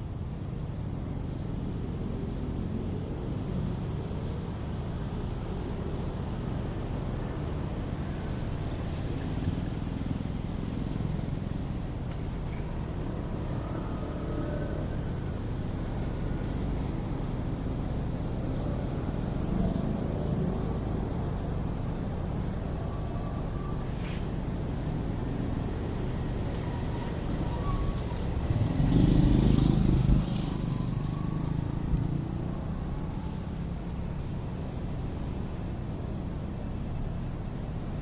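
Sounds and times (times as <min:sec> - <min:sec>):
traffic rumble: 0:00.0 - 0:38.0.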